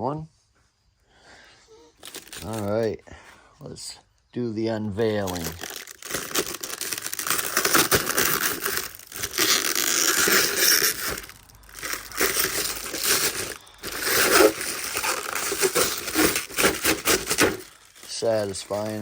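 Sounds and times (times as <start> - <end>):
plastic packaging crinkling: 2.0 - 2.9, 5.0 - 19.0.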